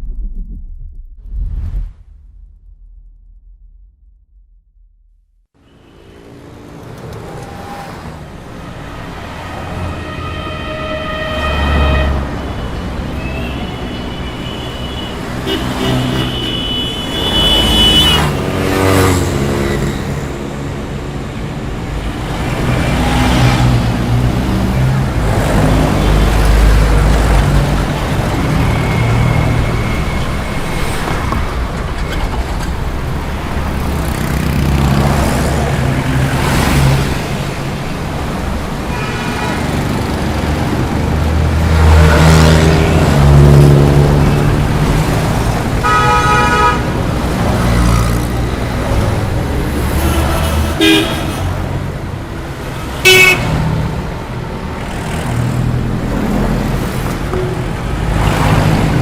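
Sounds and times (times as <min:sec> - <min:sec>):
cars passing by: 0:05.6 - 0:59.0
car horn: 0:09.4 - 0:19.2, 0:38.8 - 0:39.9, 0:45.7 - 0:47.8, 0:49.9 - 0:51.9, 0:52.9 - 0:53.8.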